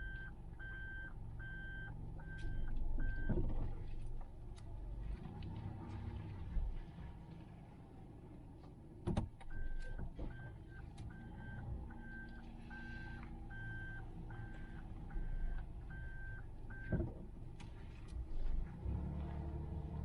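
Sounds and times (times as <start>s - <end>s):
reverse warning beeps: 0.0s - 3.3s, 9.5s - 17.0s
low engine rumble: 0.0s - 20.0s.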